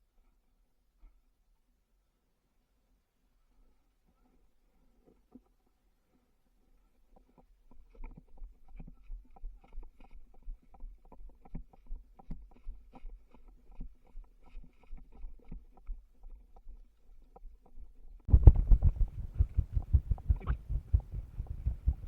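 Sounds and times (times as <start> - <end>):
low rumble: 18.3 - 22.0
microphone handling knocks and rustles: 18.3 - 22.0.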